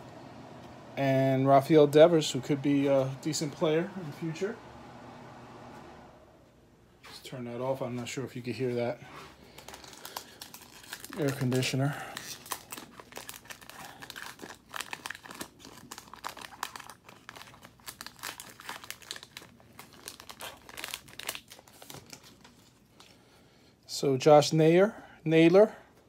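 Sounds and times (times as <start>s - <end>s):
plastic wrapper crinkling and tearing: 9.4s - 23.2s.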